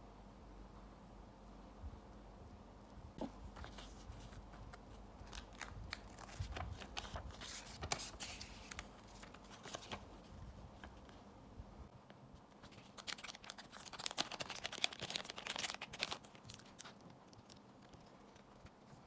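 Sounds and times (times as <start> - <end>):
packaging clicks and crinkles: 3.2 - 11.2, 12.6 - 18.5.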